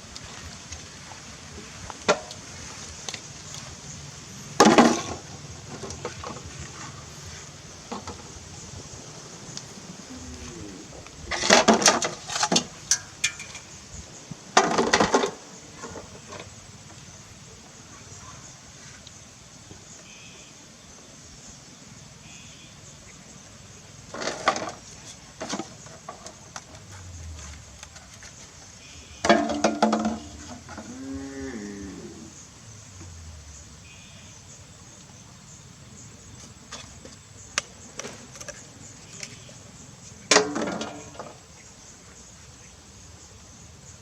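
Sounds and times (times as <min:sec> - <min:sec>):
cattle mooing: 0:09.7 - 0:11.2, 0:30.3 - 0:32.4.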